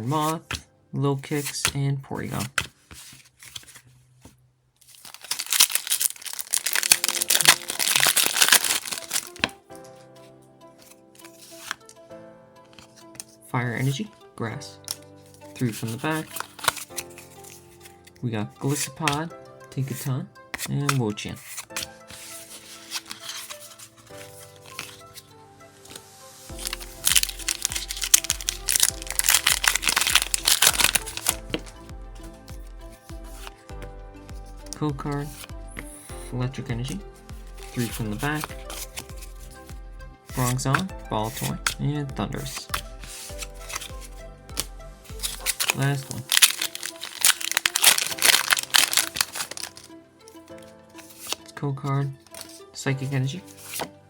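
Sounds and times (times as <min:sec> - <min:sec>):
quiet background music: 0:00.0 - 0:54.0
foil wrapper tearing and crinkling: 0:04.8 - 0:09.8, 0:14.9 - 0:17.8, 0:20.9 - 0:25.2, 0:26.5 - 0:31.6, 0:37.6 - 0:39.6, 0:42.5 - 0:51.5.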